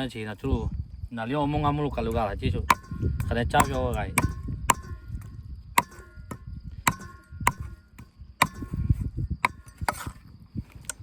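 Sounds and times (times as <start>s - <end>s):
sharp knocks with metallic ring: 1.9s - 10.1s.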